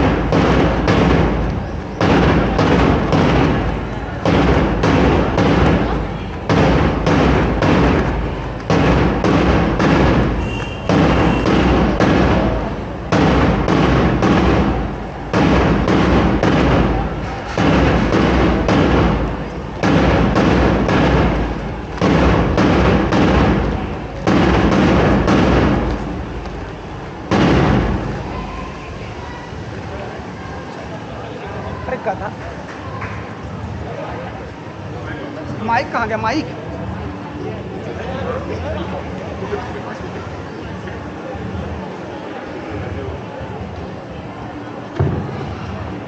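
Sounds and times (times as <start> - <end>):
heavy drum beats in a hall: 0.0 - 28.6.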